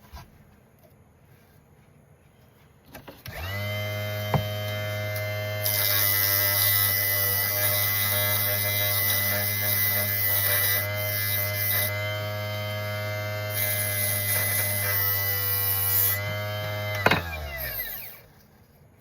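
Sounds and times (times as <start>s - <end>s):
electric motor running: 3.3s - 18.3s.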